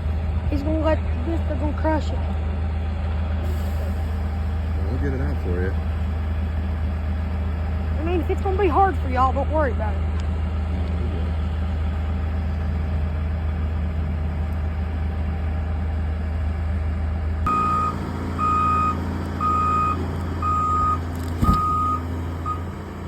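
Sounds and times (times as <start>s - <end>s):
excavator diesel engine running: 0.0s - 23.0s
travel alarm beeping: 17.5s - 22.8s.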